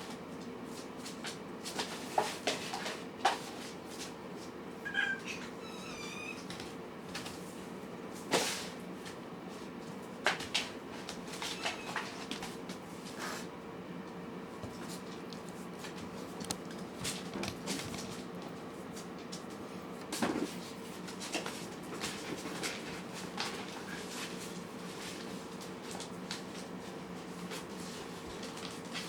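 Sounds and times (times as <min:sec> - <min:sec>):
kitten mewing: 0:04.8 - 0:06.5
light clicks and taps: 0:14.6 - 0:18.5.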